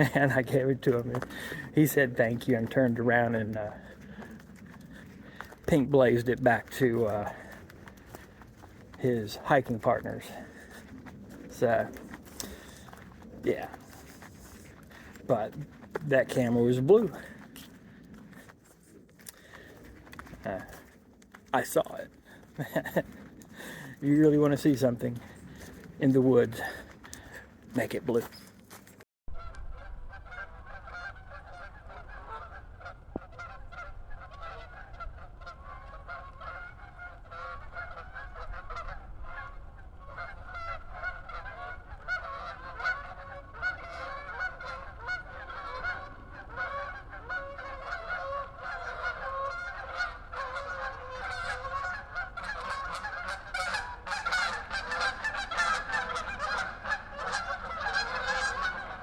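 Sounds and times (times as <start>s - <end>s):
flock of birds honking: 0.8s - 28.5s, 29.3s - 59.0s.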